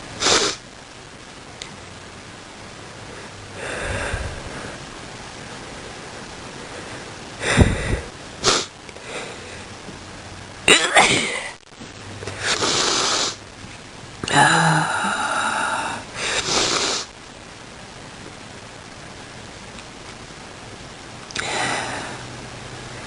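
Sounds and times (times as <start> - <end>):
person coughing and sneezing: 10.7 - 11.6.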